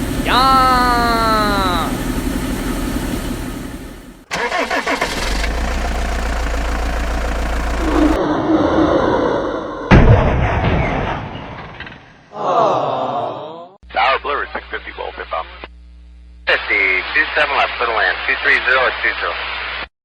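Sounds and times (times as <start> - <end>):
engine starting and running: 0.0 - 8.2
loud engine burst: 4.3 - 8.2.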